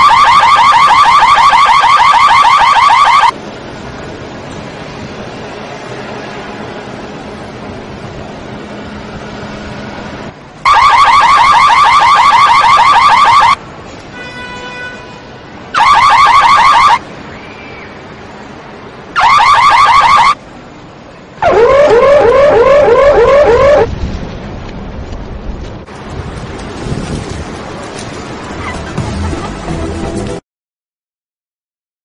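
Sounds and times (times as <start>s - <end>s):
car alarm siren warbling: 0.0s - 3.4s, 10.6s - 13.6s, 15.8s - 17.0s, 19.2s - 20.4s, 21.4s - 23.9s.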